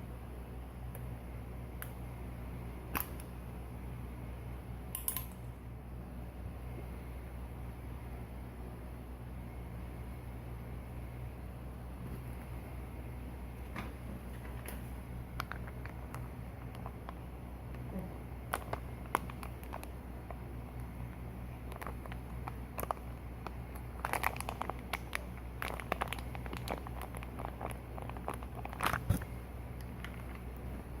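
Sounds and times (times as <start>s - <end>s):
steady low hum: 0.0s - 31.0s
slime squeezed by hand: 23.7s - 29.5s.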